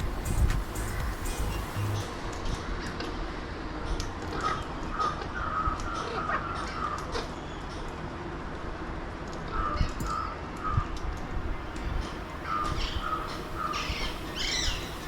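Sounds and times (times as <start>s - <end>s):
background hiss: 0.0s - 2.6s, 11.0s - 15.0s
bird squawks: 12.4s - 15.0s.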